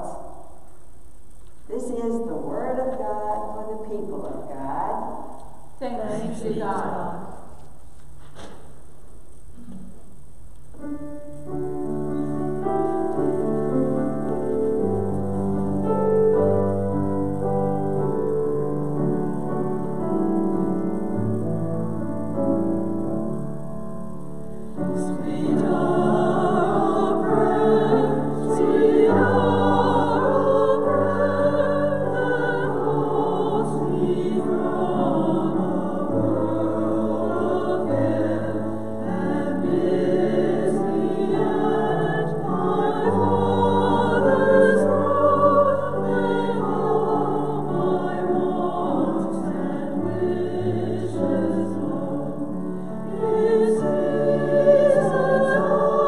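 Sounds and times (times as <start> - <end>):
choir singing with vibrato: 0.0 - 0.7, 5.0 - 7.6, 24.1 - 56.0.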